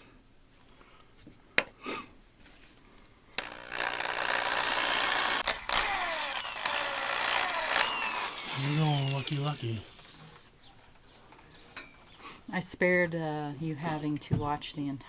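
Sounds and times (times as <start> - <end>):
electric drill whining: 3.4 - 10.5.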